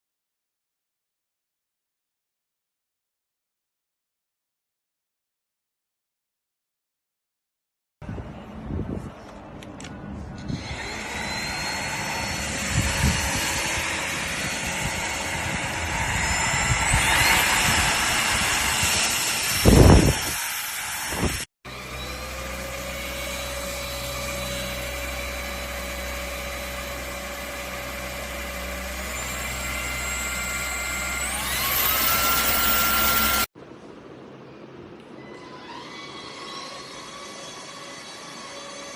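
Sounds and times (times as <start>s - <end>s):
vacuum cleaner motor whine: 21.7s - 33.5s.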